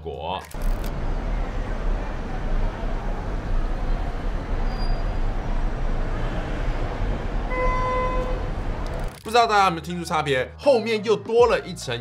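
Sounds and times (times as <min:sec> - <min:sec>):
traffic rumble: 0:00.4 - 0:09.8
crowd chattering: 0:00.9 - 0:07.5
car horn: 0:07.5 - 0:08.6.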